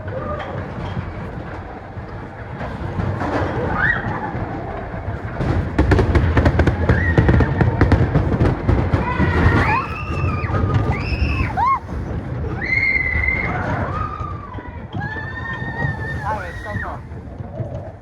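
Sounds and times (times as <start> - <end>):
roller coaster rumbling on track: 0.0 - 18.0
riders screaming: 3.4 - 4.8, 6.6 - 17.2.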